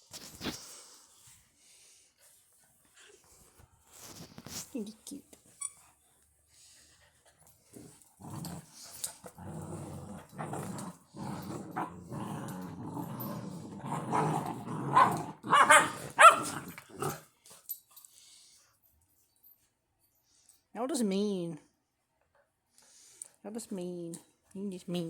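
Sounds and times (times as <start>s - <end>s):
puppies growling: 7.7s - 17.2s
puppies barking sharply: 15.0s - 16.5s.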